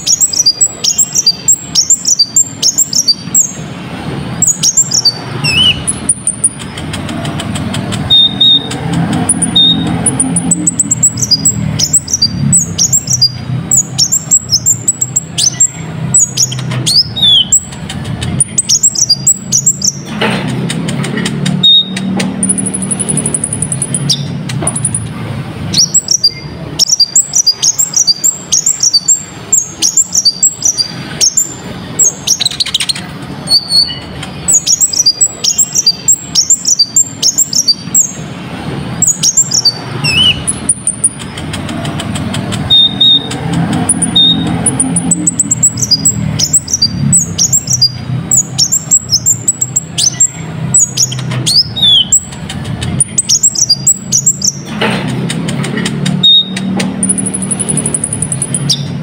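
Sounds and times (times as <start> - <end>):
bird twittering and chirping: 0.0 - 59.0.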